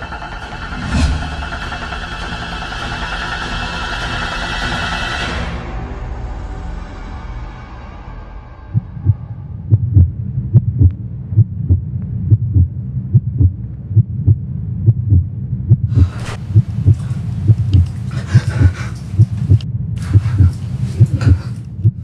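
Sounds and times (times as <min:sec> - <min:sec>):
heartbeat thumps: 0:08.8 - 0:22.0.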